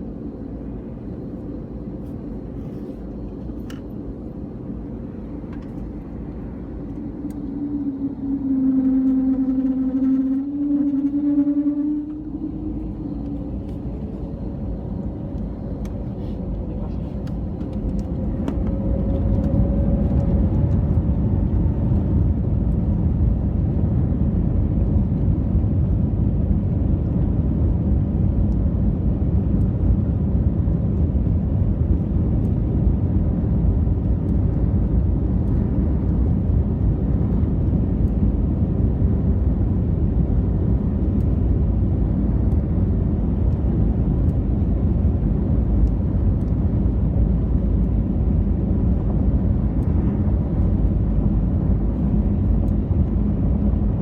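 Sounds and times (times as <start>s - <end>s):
faint rising whine: 0.0s - 23.4s
jet engine rumble in cabin: 0.0s - 54.0s.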